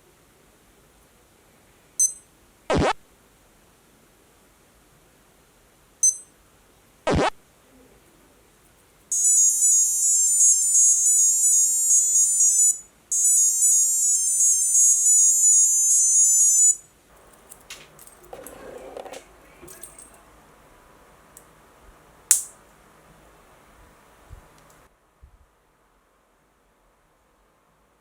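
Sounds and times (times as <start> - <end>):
wristwatch beep: 2.0 - 3.0, 6.0 - 6.3, 9.1 - 16.8
high-pitched beeping melody: 9.1 - 16.8.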